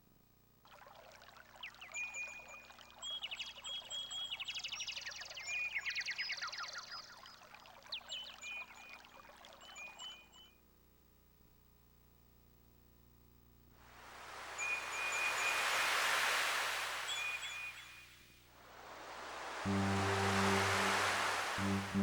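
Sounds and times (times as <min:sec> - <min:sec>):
synthesized running water: 0:00.6 - 0:03.1, 0:06.5 - 0:09.8, 0:13.9 - 0:17.5, 0:18.6 - 0:22.0
synthesized birds chirping: 0:01.5 - 0:10.5, 0:18.8 - 0:22.0.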